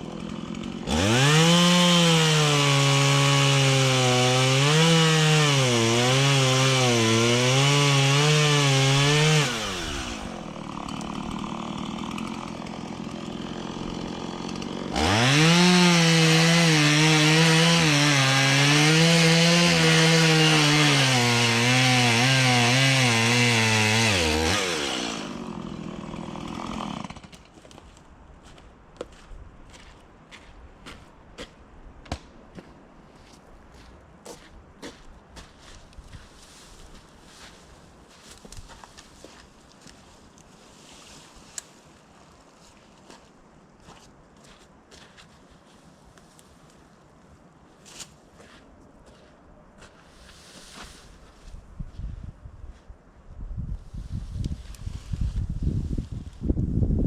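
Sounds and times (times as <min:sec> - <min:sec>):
chainsaw cutting wood: 0:00.0 - 0:28.0, 0:35.4 - 0:41.8.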